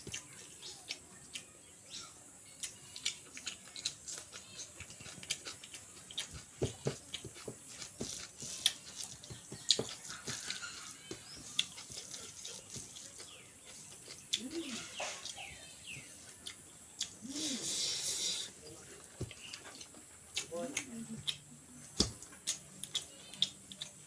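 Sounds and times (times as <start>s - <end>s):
person chewing food: 0.0s - 1.6s, 2.5s - 24.0s.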